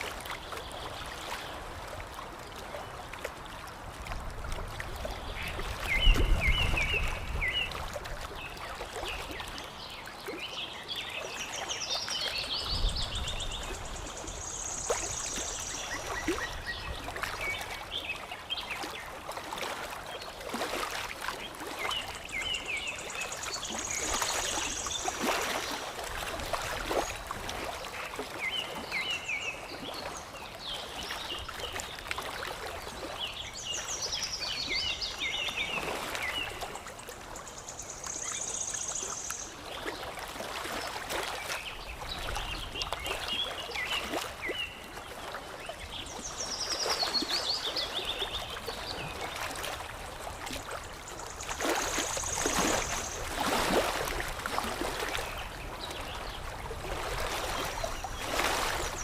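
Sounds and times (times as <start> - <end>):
water lapping and trickling: 0.0 - 59.0
small splashes: 11.5 - 29.1, 30.7 - 59.0.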